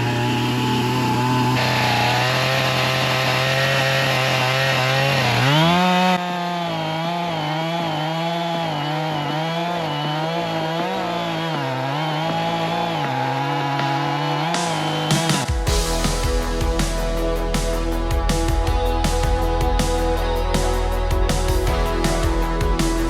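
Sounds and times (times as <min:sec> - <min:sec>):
chainsaw cutting wood: 0:00.0 - 0:23.0.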